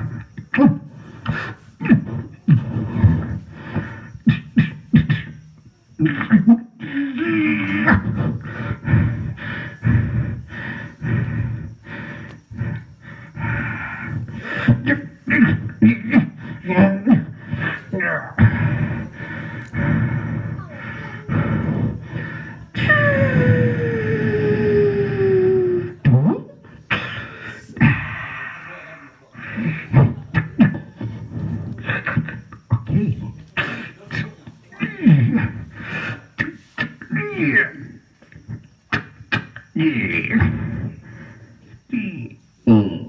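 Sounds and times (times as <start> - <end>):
squealing gliding vocal noises: 19.1 - 29.8.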